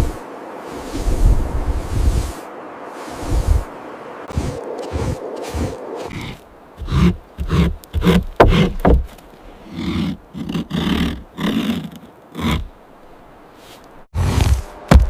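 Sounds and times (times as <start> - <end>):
tiger growling: 4.4 - 12.8
tiger roaring: 9.7 - 12.7.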